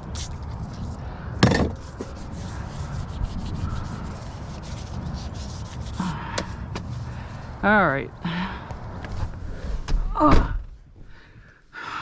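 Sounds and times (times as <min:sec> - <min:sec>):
objects rubbing and scraping: 0:00.0 - 0:07.2.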